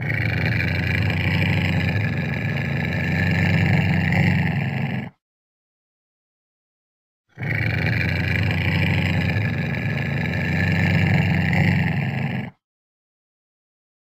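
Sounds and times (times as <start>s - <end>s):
wild cat growling: 0.0s - 5.2s, 7.3s - 12.6s.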